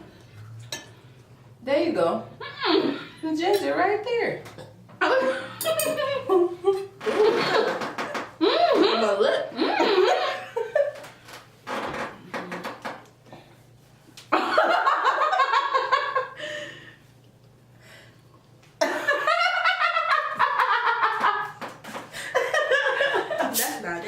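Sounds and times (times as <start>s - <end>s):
people laughing: 18.8s - 21.6s.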